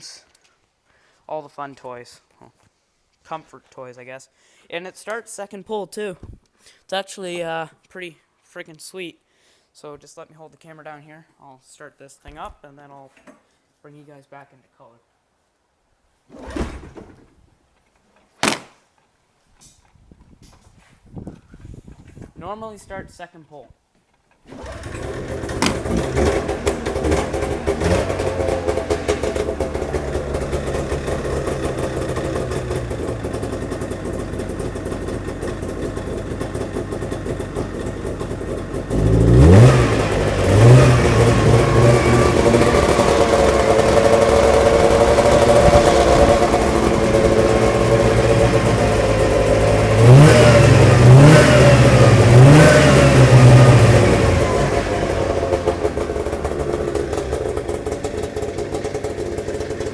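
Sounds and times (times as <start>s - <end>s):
snowmobile engine idling and revving: 24.5s - 59.9s.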